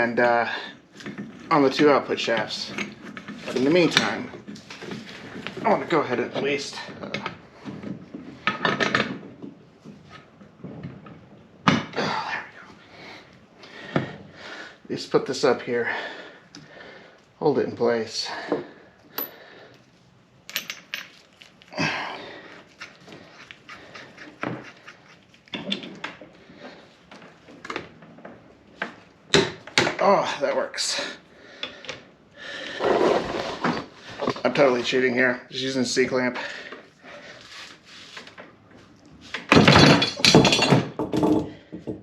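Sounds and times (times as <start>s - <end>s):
metal tools clinking and scraping: 19.1s - 19.4s, 20.5s - 21.8s, 22.6s - 26.0s.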